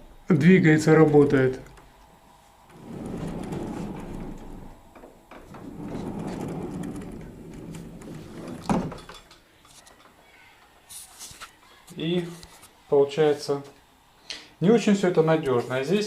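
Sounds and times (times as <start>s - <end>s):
sliding door rolling on track: 2.7s - 9.1s.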